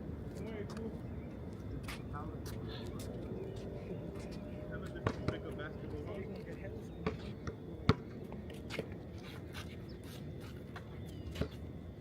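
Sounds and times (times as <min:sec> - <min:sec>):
basketball bouncing on hard court: 0:05.0 - 0:05.3.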